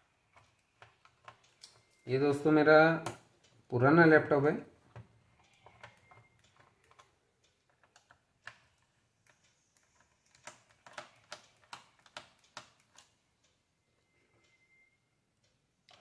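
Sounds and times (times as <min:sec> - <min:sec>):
screwdriver clicks and taps: 0:09.2 - 0:13.1.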